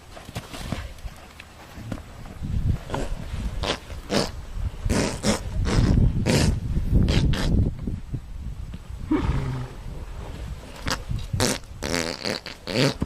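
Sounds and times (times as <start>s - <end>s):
animal growling: 9.1s - 10.1s.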